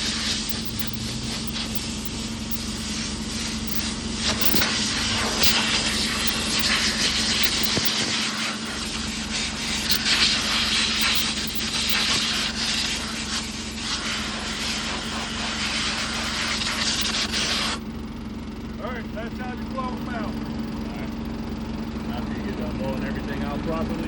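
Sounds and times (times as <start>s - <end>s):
compressed air blowgun hissing: 0.0s - 17.8s
steady engine hum: 0.0s - 24.0s.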